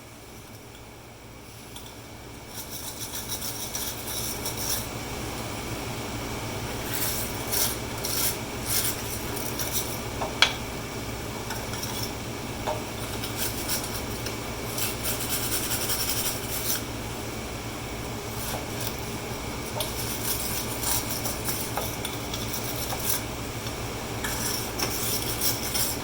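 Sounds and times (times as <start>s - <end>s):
wire brush scrubbing metal: 6.8s - 10.0s, 12.9s - 16.9s, 18.2s - 23.3s, 24.2s - 26.0s.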